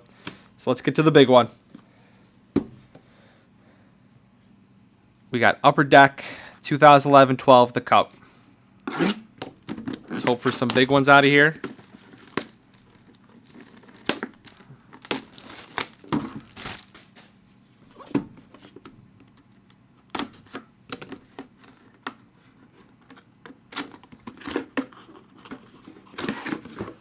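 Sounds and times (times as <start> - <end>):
cardboard packaging clicks: 9.4 - 17.4
plastic wrap crinkling and tearing: 10.0 - 17.4.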